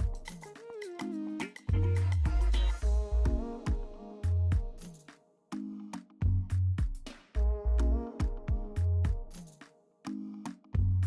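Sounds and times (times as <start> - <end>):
upbeat music with heavy bass: 0.0 - 5.1, 6.2 - 9.6, 10.7 - 11.0.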